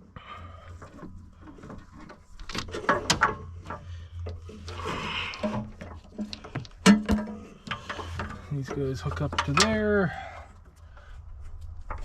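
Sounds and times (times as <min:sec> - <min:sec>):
low hum: 0:00.0 - 0:12.0
hoses rubbing and knocking: 0:00.6 - 0:10.1.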